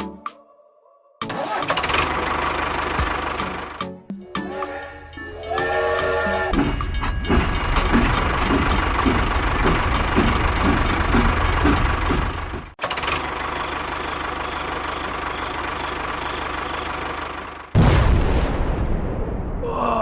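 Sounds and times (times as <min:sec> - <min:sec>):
engine running with regular knock: 0:02.0 - 0:03.8, 0:06.6 - 0:13.2
steady running noise: 0:06.5 - 0:12.7.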